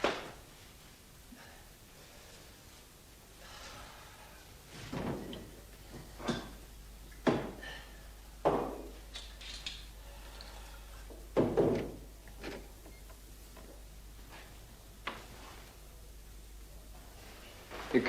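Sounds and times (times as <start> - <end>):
thuds and knocks: 7.2 - 7.6, 8.4 - 9.0, 11.4 - 12.0.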